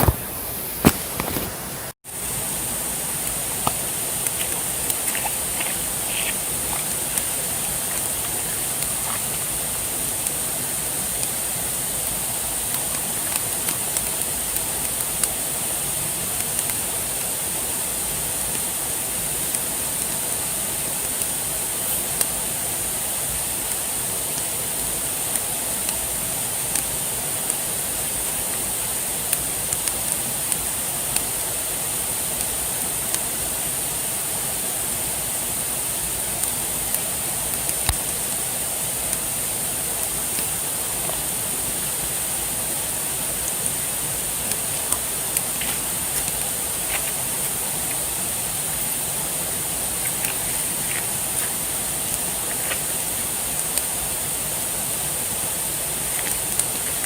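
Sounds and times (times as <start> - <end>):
campfire crackling and popping: 0.0 - 1.6, 3.2 - 10.4, 43.4 - 57.0
steady rushing hiss: 0.0 - 57.0.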